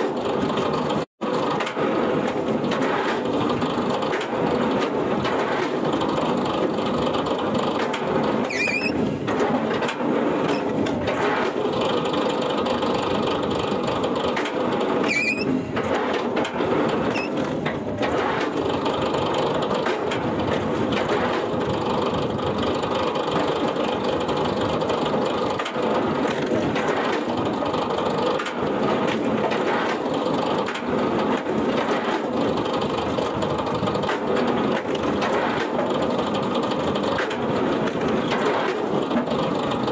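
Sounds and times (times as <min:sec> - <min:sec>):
brief squeaks: 0:08.4 - 0:09.0, 0:15.0 - 0:15.6, 0:17.1 - 0:17.4.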